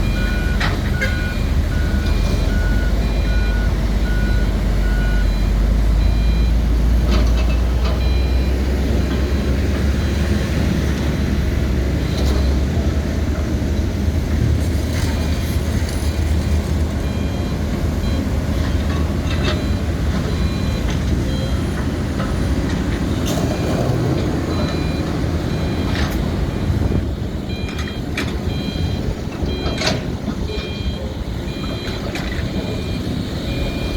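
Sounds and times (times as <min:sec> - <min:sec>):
high warning alarm beeps: 0:00.0 - 0:06.8, 0:07.8 - 0:11.3, 0:15.0 - 0:33.9
excavator diesel engine running: 0:00.0 - 0:33.9.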